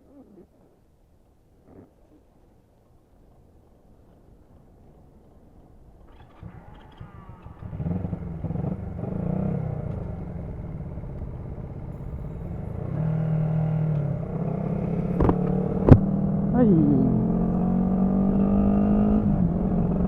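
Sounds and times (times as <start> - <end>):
motorcycle engine running: 6.1 - 20.0.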